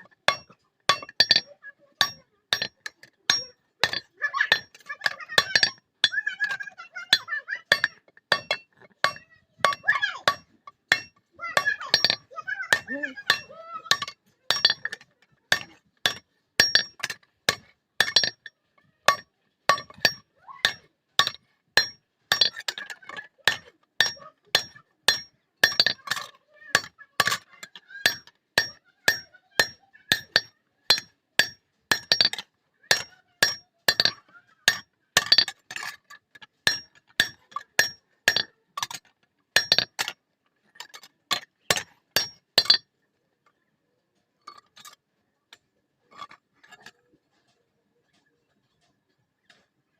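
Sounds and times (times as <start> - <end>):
hammer striking steel on anvil: 15.5 - 18.5.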